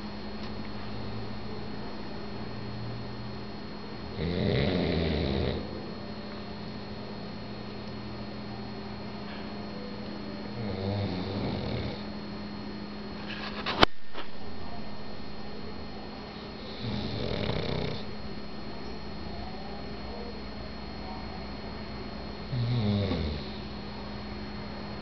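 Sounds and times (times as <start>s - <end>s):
dog snoring: 4.1s - 5.7s, 10.5s - 12.1s, 16.3s - 18.1s, 22.5s - 23.7s.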